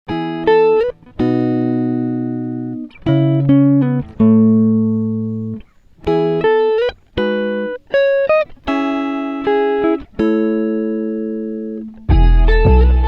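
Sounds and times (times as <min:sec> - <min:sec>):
instrumental background music: 0:08.6 - 0:13.0.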